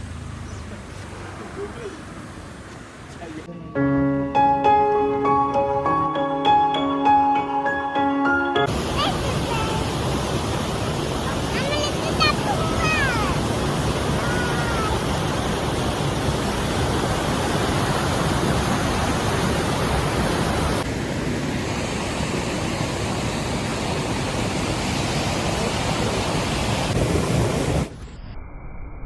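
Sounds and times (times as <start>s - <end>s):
waterfall rushing: 8.7s - 27.9s.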